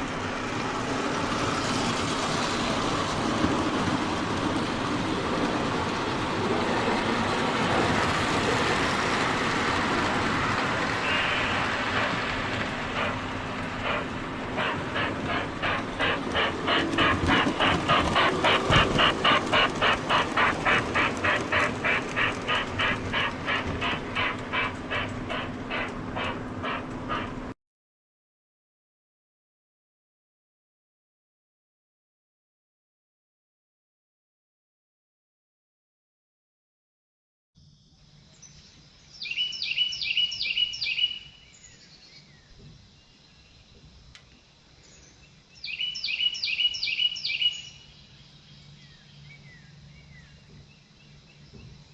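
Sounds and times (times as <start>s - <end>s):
steam exhaust puffs: 0.0s - 27.6s
songbird singing high notes: 39.2s - 42.0s, 45.6s - 48.2s.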